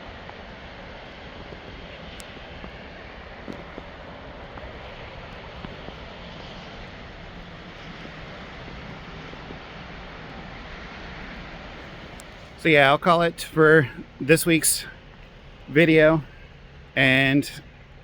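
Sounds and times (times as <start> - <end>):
rushing outdoor background noise: 0.0 - 18.0.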